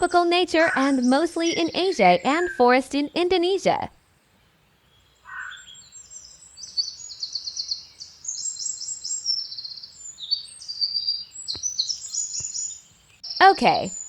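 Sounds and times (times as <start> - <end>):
small birds chirping and trilling: 0.0 - 14.0.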